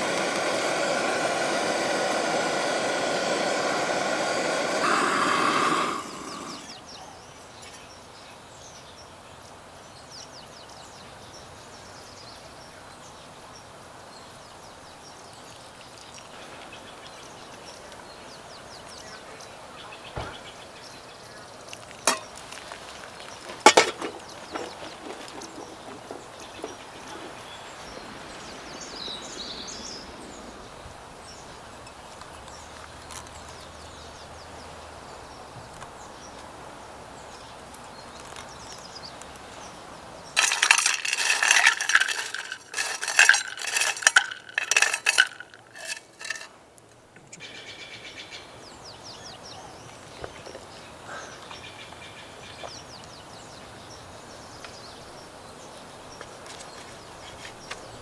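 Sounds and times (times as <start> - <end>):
outdoor ambience: 0.0 - 7.8, 21.7 - 33.6, 40.4 - 46.5
dishes and cutlery clinking: 23.7 - 24.2, 40.4 - 46.5.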